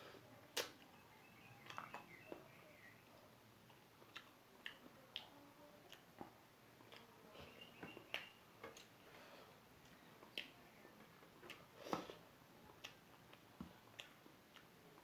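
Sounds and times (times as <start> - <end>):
chewing clicks and smacks: 1.6 - 2.5, 3.6 - 7.1, 7.8 - 9.0, 9.8 - 15.0.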